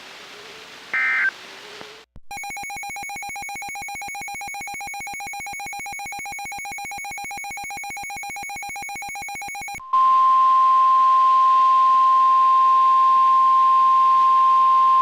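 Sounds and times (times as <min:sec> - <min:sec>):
rapidly pulsing electronic beep: 0:02.3 - 0:09.8.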